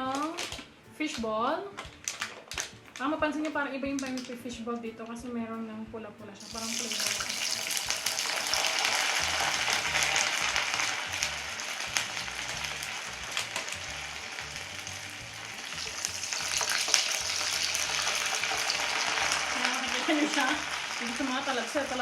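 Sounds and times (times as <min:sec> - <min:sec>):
food deep-frying in oil: 0:06.4 - 0:22.0.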